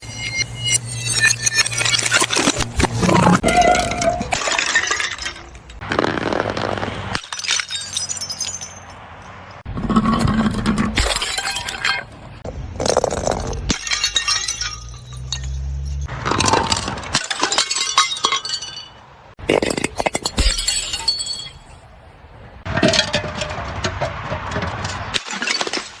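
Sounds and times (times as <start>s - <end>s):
glass bottles smashing: 0.1s - 9.0s, 9.8s - 21.8s, 22.7s - 26.0s
glass shards tinkling: 3.4s - 5.8s, 7.2s - 9.0s, 13.7s - 16.1s, 16.7s - 21.8s.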